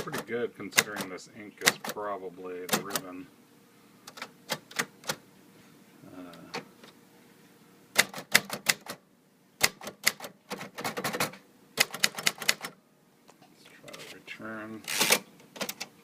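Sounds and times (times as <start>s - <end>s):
manual typewriter typing: 0.0s - 2.0s, 2.7s - 3.1s, 4.1s - 5.2s, 8.0s - 9.0s, 9.6s - 12.8s, 14.8s - 15.9s.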